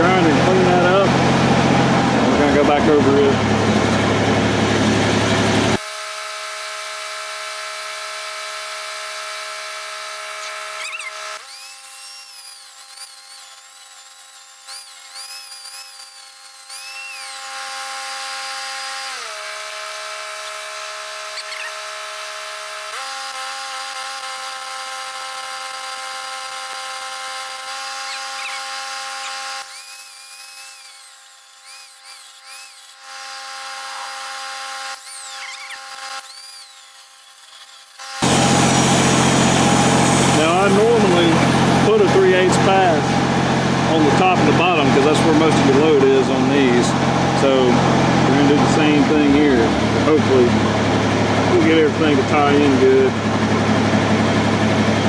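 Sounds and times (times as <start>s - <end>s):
angle grinder grinding steel: 5.8s - 43.0s.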